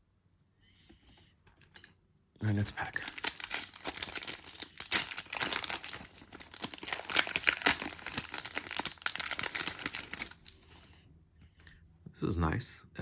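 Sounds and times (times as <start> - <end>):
wrapper tearing and crinkling: 2.4 - 10.8.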